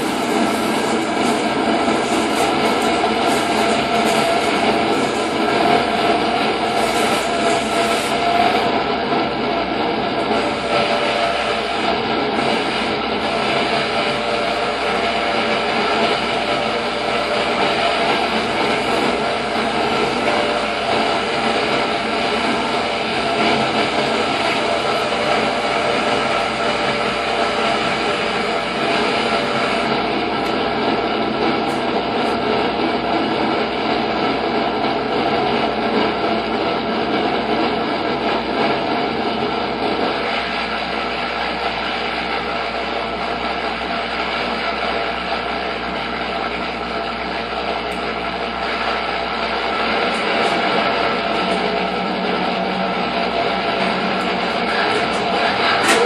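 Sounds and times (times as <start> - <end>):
thick electronic drone: 0.0 - 33.0, 47.6 - 56.0.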